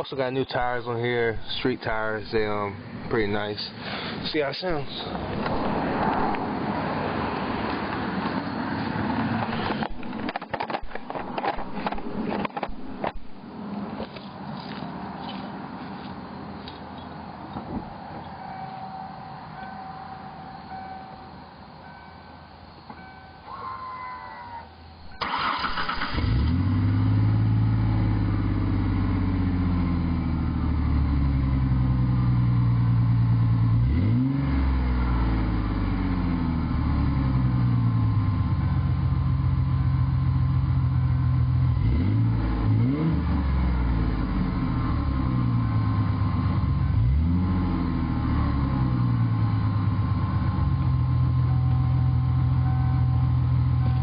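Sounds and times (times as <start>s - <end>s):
car engine revving and idling: 4.8s - 15.4s, 25.3s - 54.0s.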